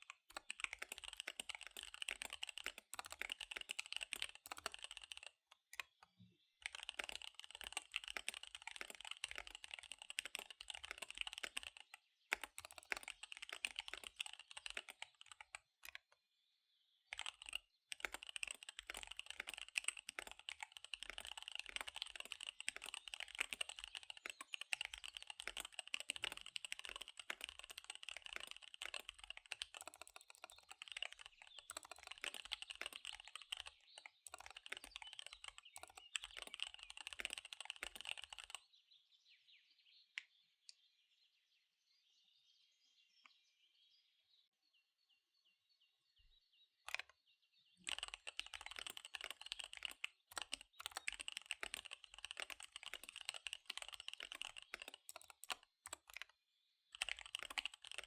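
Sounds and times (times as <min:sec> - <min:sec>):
fast typing on mechanical keyboard: 0:00.0 - 0:06.0, 0:06.6 - 0:16.0, 0:17.1 - 0:38.6, 0:47.8 - 0:56.3, 0:56.9 - 0:58.0.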